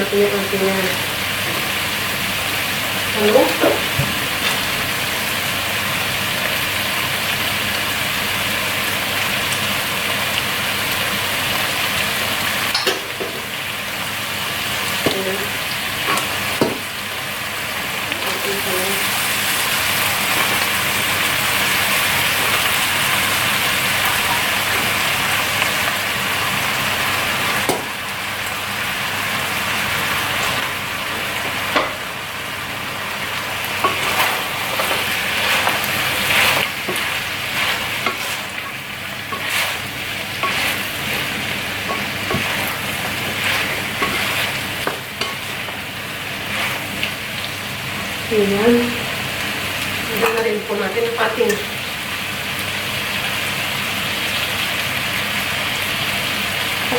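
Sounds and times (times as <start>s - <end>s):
food sizzling in hot oil: 0.0s - 56.9s
utensil scraping a pan: 33.8s - 45.5s.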